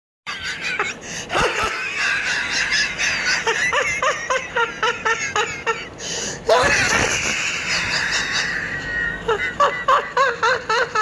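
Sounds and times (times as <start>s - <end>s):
high-pitched snickering giggle: 0.3s - 11.0s.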